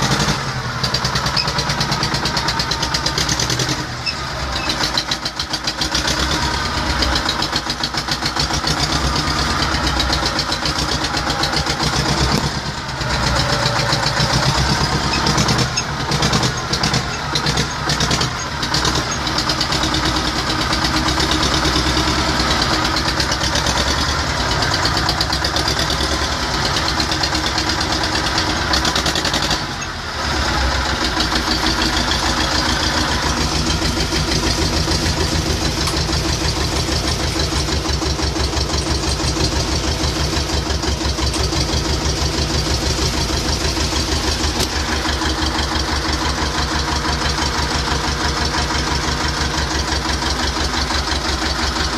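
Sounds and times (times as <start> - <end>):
tractor diesel engine running: 0.0 - 51.9.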